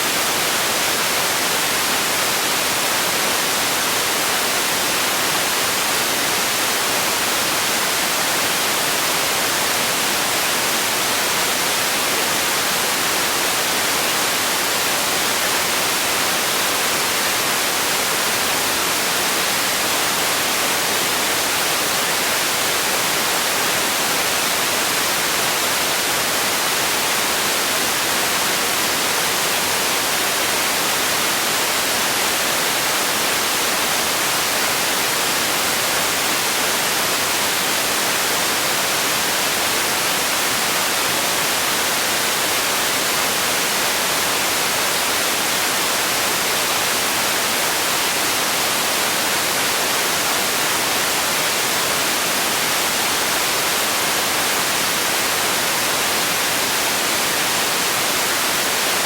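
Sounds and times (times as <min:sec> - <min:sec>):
white noise hiss: 0:00.0 - 0:59.0.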